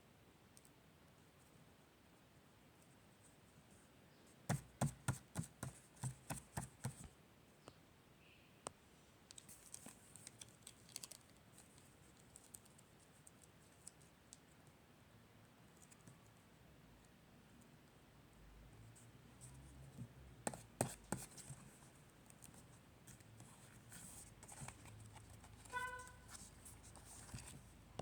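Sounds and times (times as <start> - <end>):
sharp taps on paper: 4.5 - 7.1
paper clicks and rustles: 9.3 - 14.4, 22.3 - 27.7.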